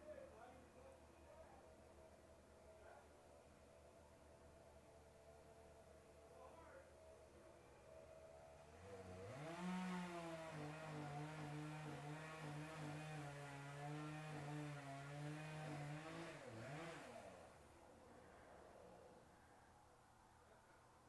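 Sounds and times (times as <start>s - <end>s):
chainsaw engine revving: 8.7s - 17.6s.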